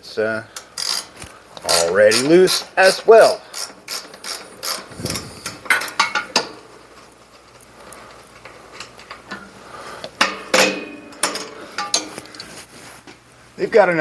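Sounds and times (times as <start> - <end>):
hand tools clicking on metal: 0.5 - 12.5
loud ringing metal clank: 10.3 - 12.2.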